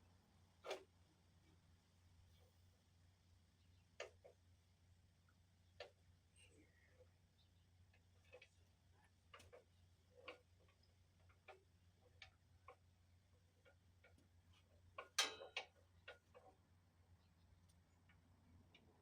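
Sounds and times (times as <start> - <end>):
faint low hum: 0.0 - 19.0
clicks and light knocks: 13.6 - 16.6.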